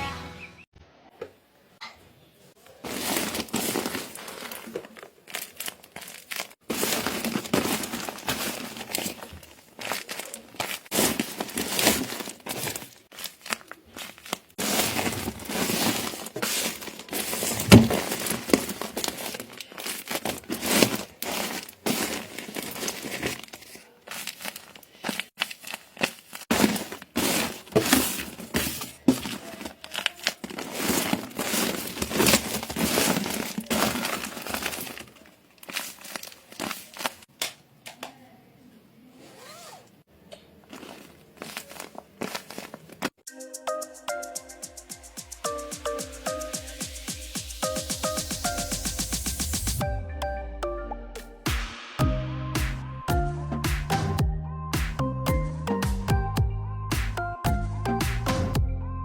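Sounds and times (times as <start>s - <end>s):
paper crinkling and rustling: 2.6s - 37.3s, 40.5s - 43.2s.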